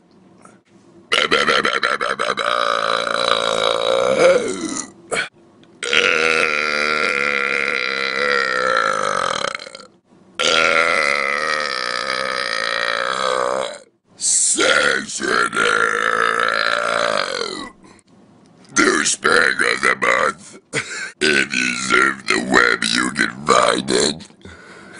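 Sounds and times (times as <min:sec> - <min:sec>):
man belching loudly: 0:01.1 - 0:13.9, 0:14.7 - 0:17.8, 0:21.2 - 0:24.4.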